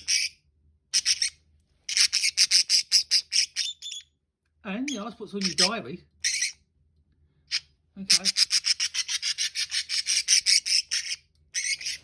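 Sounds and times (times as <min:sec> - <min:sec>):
budgerigar chattering: 0:01.0 - 0:04.0, 0:04.8 - 0:06.6, 0:07.5 - 0:12.0.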